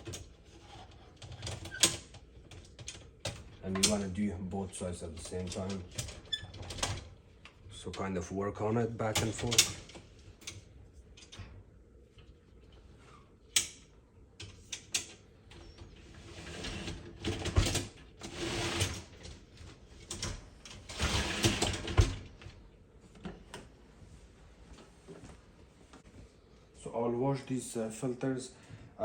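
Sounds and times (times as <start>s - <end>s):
dishwasher rack rolling and rattling: 0.0s - 7.2s, 9.0s - 10.6s, 14.4s - 22.5s
dishwasher rack wheels clicking: 20.0s - 22.3s.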